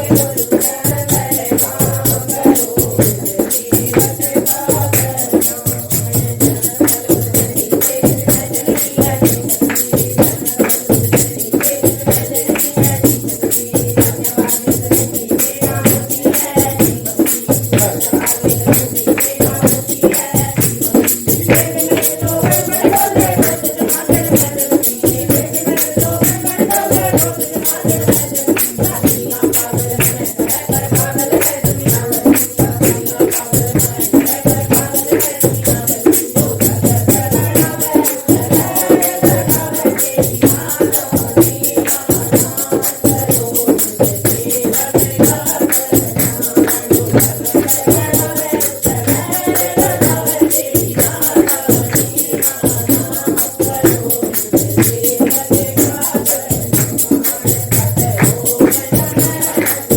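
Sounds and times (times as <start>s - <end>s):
jingling hand percussion: 0.0s - 59.9s
person singing devotional song: 0.0s - 59.9s.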